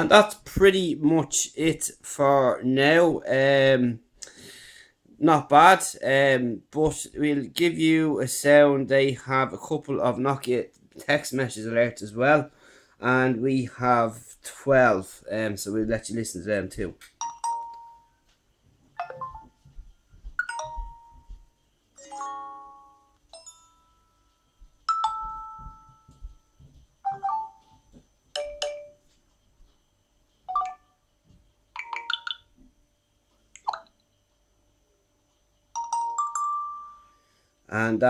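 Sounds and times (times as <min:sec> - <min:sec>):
phone message alert chimes: 0:20.4 - 0:21.3.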